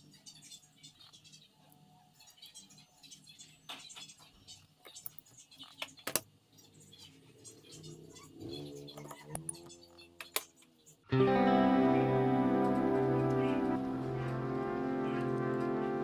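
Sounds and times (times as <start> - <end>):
guitar music: 11.1 - 16.0.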